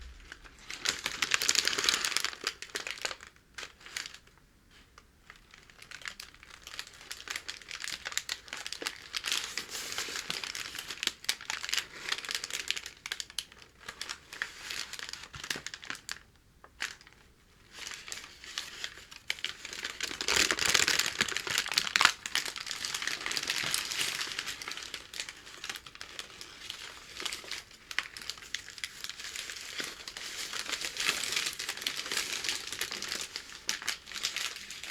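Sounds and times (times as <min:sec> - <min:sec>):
paper crinkling and tearing: 0:17.8 - 0:34.9.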